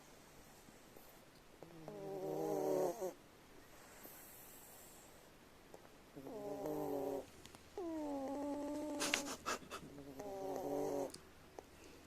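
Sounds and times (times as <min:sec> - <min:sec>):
cat snoring: 0:01.6 - 0:03.2, 0:06.2 - 0:09.3, 0:09.9 - 0:11.2.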